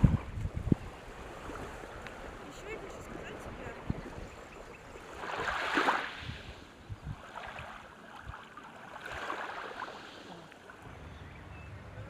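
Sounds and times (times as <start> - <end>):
wind rumble on microphone: 0.0 - 8.4
small waves washing onto beach: 0.0 - 10.9.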